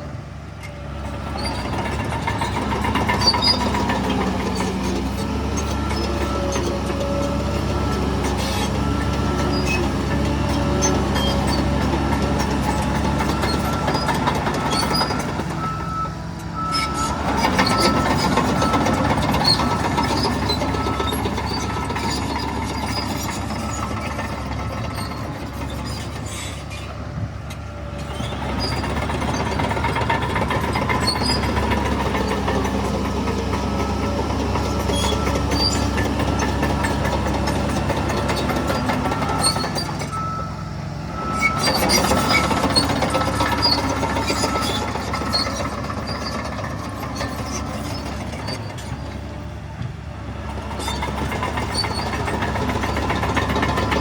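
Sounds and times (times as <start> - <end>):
diesel earthmoving machinery running: 0.0 - 54.0
reversing alarm beeping: 12.8 - 25.0, 33.7 - 46.4, 52.1 - 54.0.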